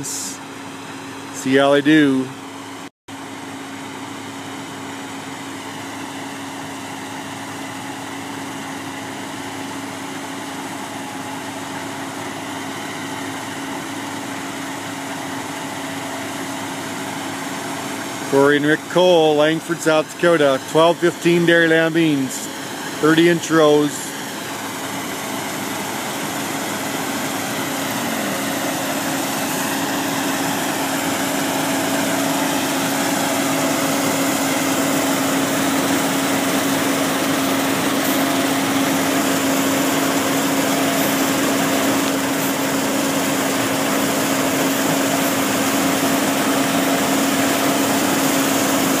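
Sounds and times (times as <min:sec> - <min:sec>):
combine harvester droning: 0:00.0 - 0:49.0.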